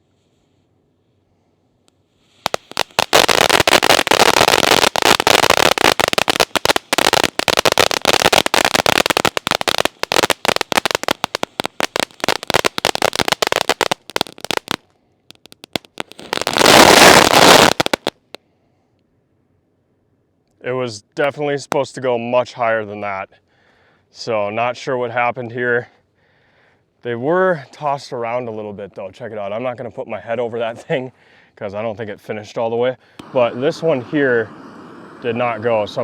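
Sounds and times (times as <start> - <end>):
firework rushing hiss: 2.2 - 14.8, 15.7 - 18.1, 33.2 - 36.0
firework crackling: 2.3 - 18.3, 33.2 - 36.0.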